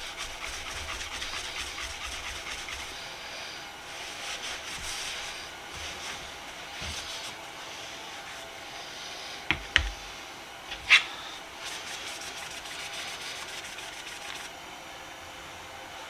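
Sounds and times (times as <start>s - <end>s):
faint rubbing: 0.0s - 9.2s, 10.7s - 14.5s.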